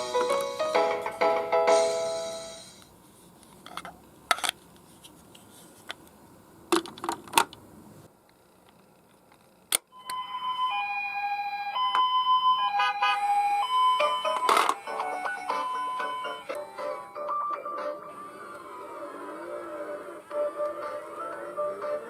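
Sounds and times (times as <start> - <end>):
toy ambulance two-tone siren: 10.0 - 22.0.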